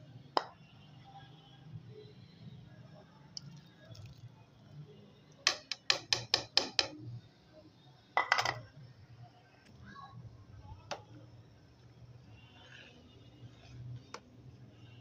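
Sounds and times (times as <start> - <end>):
metal utensil tapping a pot: 5.4 - 7.0, 8.2 - 8.6.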